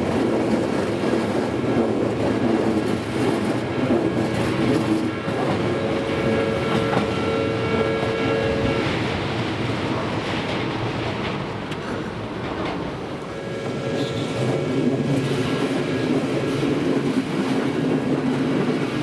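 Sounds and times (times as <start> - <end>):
electric train running noise: 0.0 - 19.0
high steady tones: 4.2 - 9.4.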